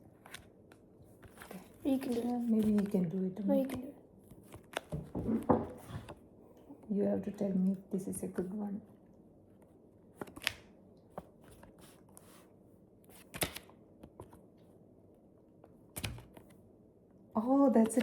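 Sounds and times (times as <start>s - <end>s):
paper and wrapper crinkling: 1.2s - 3.2s.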